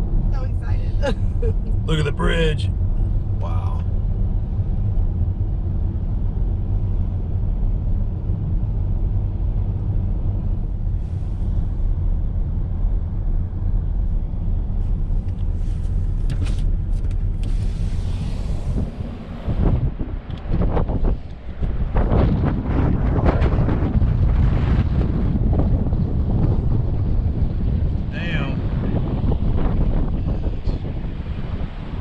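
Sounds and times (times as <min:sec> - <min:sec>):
car engine and road noise: 0:00.0 - 0:32.0.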